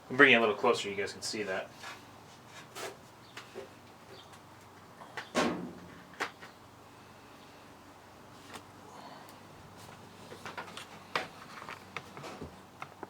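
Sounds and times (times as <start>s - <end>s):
handling knocks and clicks: 10.3s - 13.0s.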